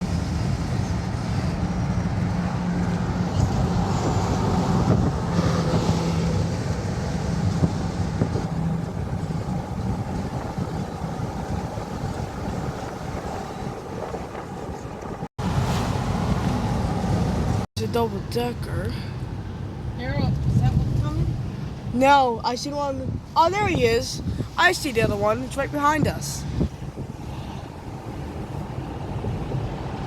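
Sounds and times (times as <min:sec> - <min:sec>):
train rumbling by: 0:00.0 - 0:17.7, 0:25.0 - 0:30.0
low engine hum: 0:00.0 - 0:22.0, 0:22.9 - 0:30.0.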